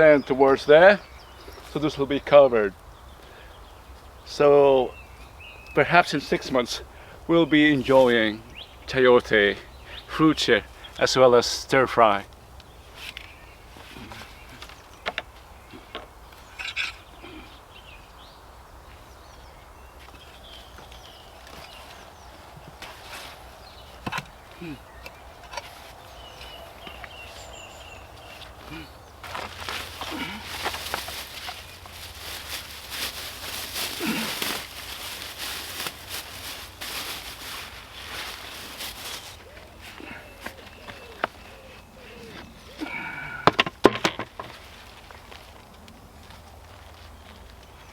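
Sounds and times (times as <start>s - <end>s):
birds chirping and calling: 0.0s - 43.5s
rustling and crunching: 18.8s - 47.9s.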